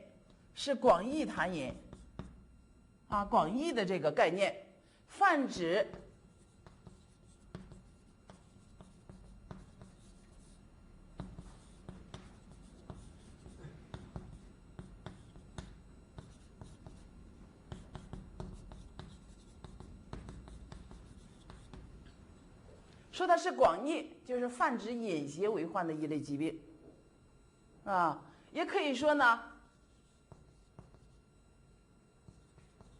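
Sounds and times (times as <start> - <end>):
low room hum: 0.0 - 32.9
writing on a board: 1.3 - 2.5, 5.8 - 22.2, 29.7 - 31.5, 32.2 - 32.9.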